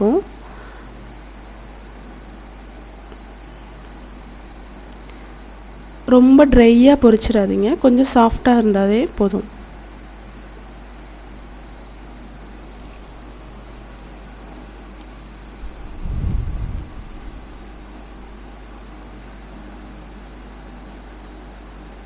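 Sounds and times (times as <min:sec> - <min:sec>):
high-pitched electronic whine: 0:00.0 - 0:22.0
low hum: 0:15.4 - 0:18.7.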